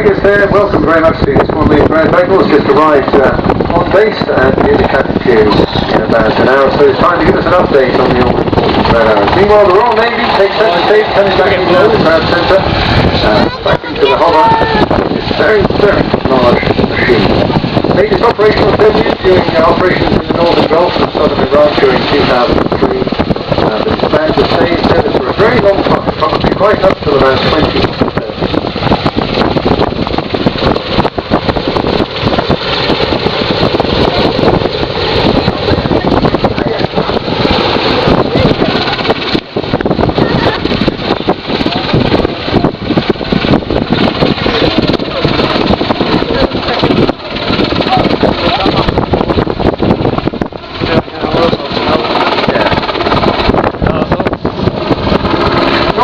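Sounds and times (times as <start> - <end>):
helicopter rotor and turbine noise: 0.0 - 56.0
wind buffeting microphone: 0.0 - 56.0.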